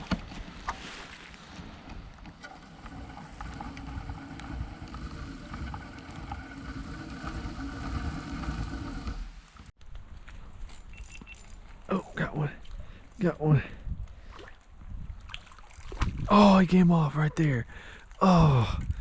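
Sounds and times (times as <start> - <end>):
wind buffeting microphone: 13.7 - 16.3, 18.5 - 19.0.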